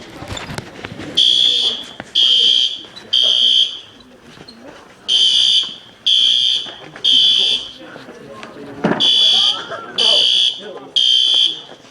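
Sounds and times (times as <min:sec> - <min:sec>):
fire alarm horn blasts: 0:01.2 - 0:04.0, 0:05.1 - 0:07.8, 0:09.0 - 0:11.7.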